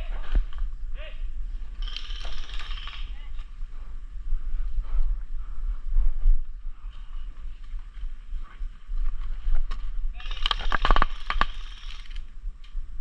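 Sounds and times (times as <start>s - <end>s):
low wind rumble: 0.0s - 13.0s
sharp cracks: 10.2s - 12.8s.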